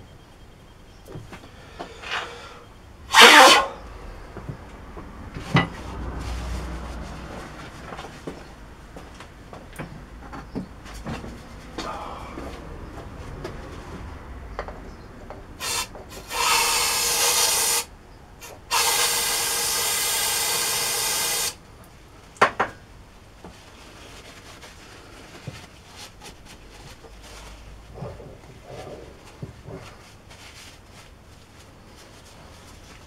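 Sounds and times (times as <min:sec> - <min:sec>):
tool rasping on metal: 0:15.7 - 0:17.8.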